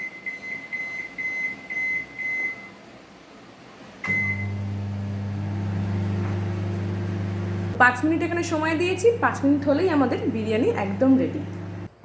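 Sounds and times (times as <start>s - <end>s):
microwave keypad beeps: 0.0s - 2.7s, 4.1s - 4.6s
microwave oven humming: 4.0s - 12.0s
microwave start click: 4.1s - 7.8s, 10.9s - 11.9s.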